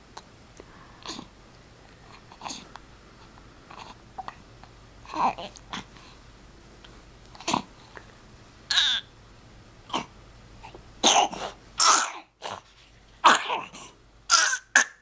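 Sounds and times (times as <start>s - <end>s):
baby coughing: 8.7s - 9.1s, 9.9s - 10.1s, 11.0s - 12.6s, 13.2s - 15.0s.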